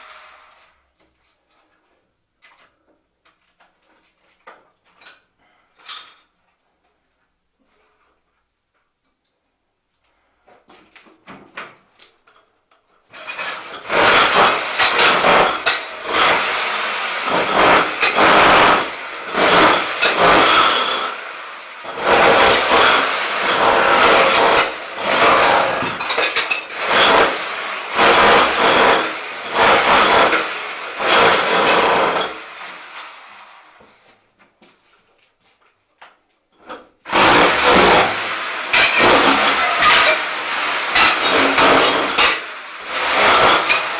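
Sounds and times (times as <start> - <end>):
tile and mortar breaking: 13.1 - 16.4, 17.2 - 21.2, 21.8 - 32.4, 37.1 - 42.5, 43.1 - 43.9
rotary hammer chiselling tiles: 13.1 - 16.6, 17.2 - 21.2, 21.8 - 32.4, 36.6 - 43.9.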